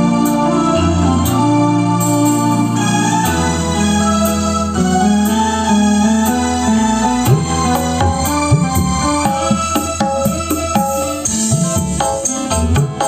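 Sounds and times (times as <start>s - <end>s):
music with percussive beat: 7.1s - 13.0s
low pitch-bending drum notes: 7.3s - 13.0s.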